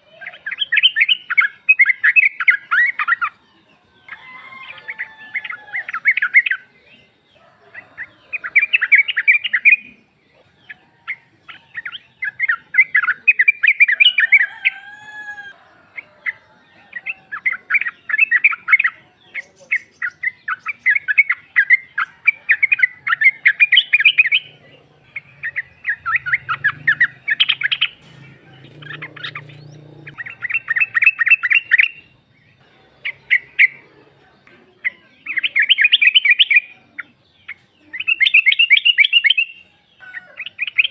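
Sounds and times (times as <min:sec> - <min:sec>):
bird chattering calls: 0:15.9 - 0:40.9.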